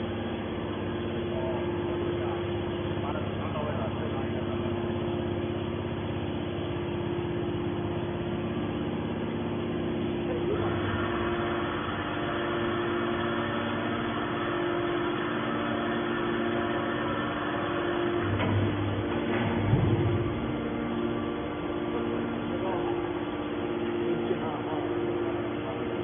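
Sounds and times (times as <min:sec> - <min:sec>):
hydraulic metal baler humming: 0:00.0 - 0:26.0.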